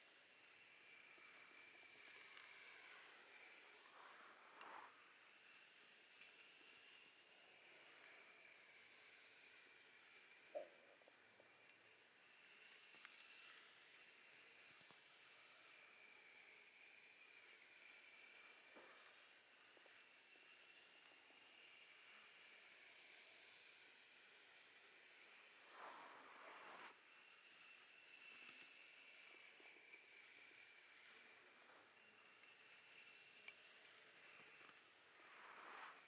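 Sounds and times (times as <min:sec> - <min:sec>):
faint steady hiss: 0:00.0 - 0:36.0
soft rubbing strokes: 0:01.1 - 0:08.7, 0:25.3 - 0:27.0, 0:30.9 - 0:36.0.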